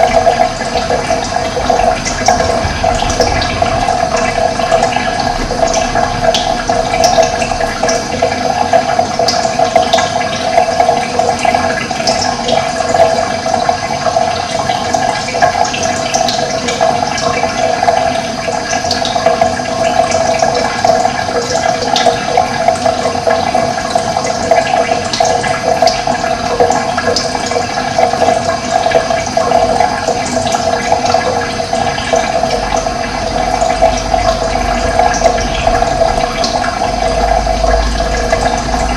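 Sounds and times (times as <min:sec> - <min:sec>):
stream water rushing: 0:00.0 - 0:10.5.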